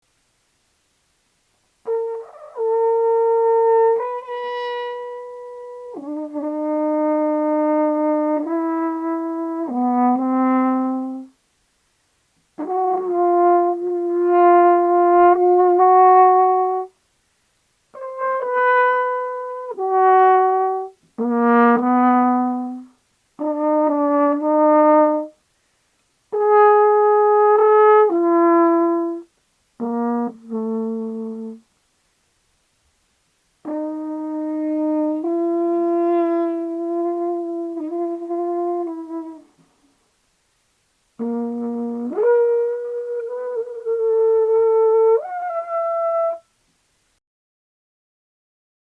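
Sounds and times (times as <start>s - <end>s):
brass horn playing held notes: 1.8s - 11.4s, 12.6s - 17.0s, 17.9s - 25.4s, 26.3s - 31.7s, 33.6s - 39.6s, 41.2s - 46.5s.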